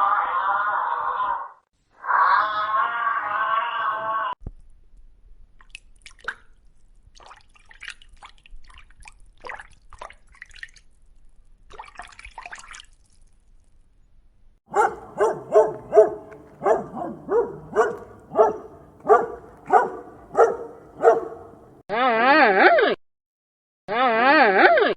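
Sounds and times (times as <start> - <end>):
water drips and splashes: 5.6 - 13.8
dog barking rapidly: 14.7 - 21.8.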